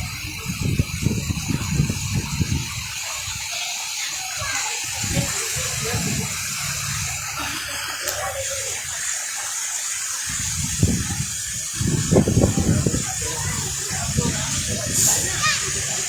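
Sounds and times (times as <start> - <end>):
heavy rain pouring: 0.0 - 16.0
low rumbling bursts: 4.9 - 7.7.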